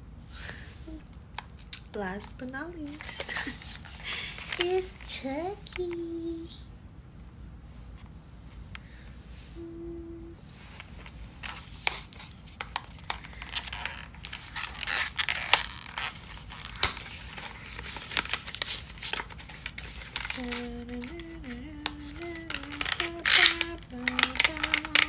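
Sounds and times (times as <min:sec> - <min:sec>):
packaging crinkling and tearing: 0:02.9 - 0:05.1, 0:11.0 - 0:25.0
person humming: 0:04.6 - 0:06.7, 0:09.4 - 0:10.6, 0:20.2 - 0:25.0.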